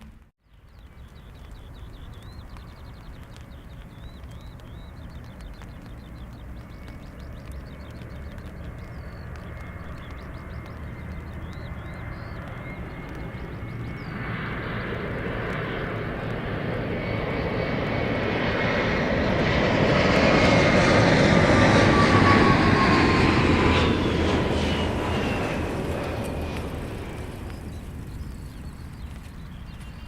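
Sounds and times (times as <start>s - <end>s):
airliner engines passing: 0.7s - 30.0s
engine whine falling in pitch: 6.3s - 30.0s.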